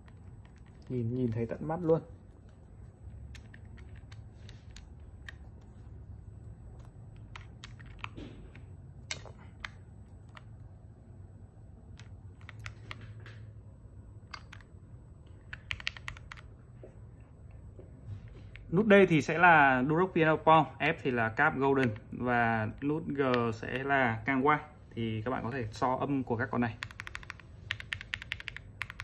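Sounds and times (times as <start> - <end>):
mechanical keyboard keystrokes: 3.2 - 5.6, 7.1 - 10.5, 11.9 - 13.4, 14.3 - 14.7, 15.5 - 16.5, 26.8 - 29.0.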